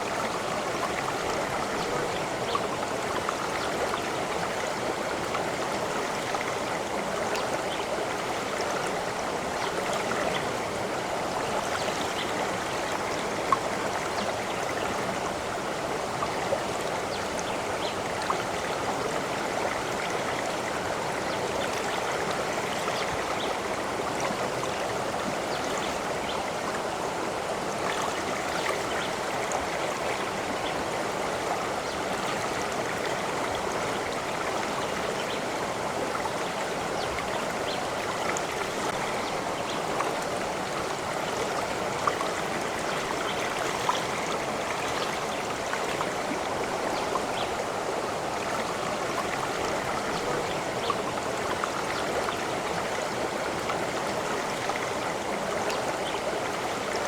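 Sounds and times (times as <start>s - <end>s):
stream water running: 0.0s - 57.0s.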